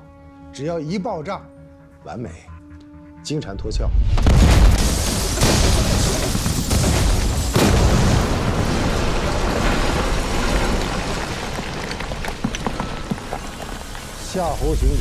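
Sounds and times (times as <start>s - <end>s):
bomb explosion rumbling blast: 3.9s - 12.4s.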